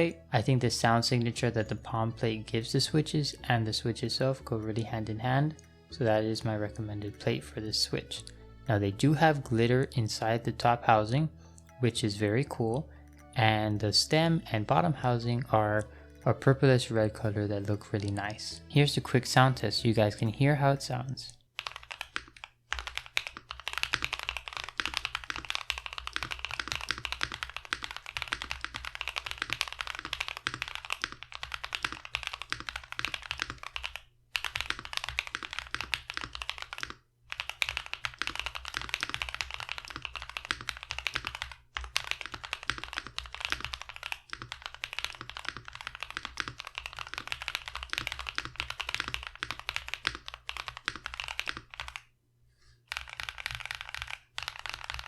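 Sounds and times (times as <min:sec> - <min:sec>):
typing on mechanical keyboard: 0:20.9 - 0:52.1, 0:52.9 - 0:55.0.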